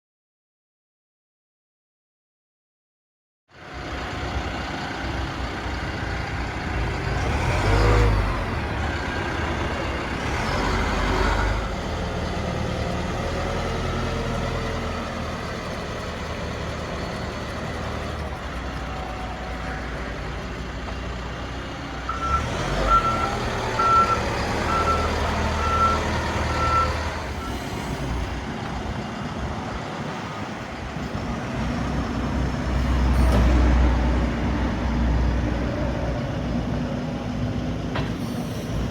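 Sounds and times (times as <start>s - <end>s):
diesel engine running: 3.6s - 38.9s
reversing alarm beeping: 22.1s - 28.1s.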